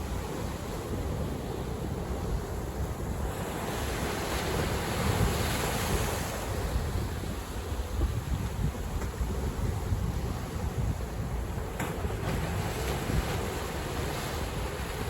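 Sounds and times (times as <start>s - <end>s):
wind rumble on microphone: 0.0s - 15.0s
sea waves breaking on concrete: 3.2s - 15.0s.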